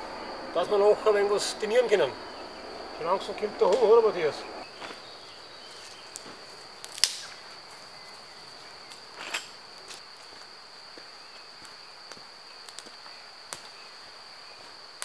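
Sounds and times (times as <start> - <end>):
crickets trilling: 0.0 - 15.0
dry wood cracking in campfire: 3.3 - 10.4, 11.4 - 13.9.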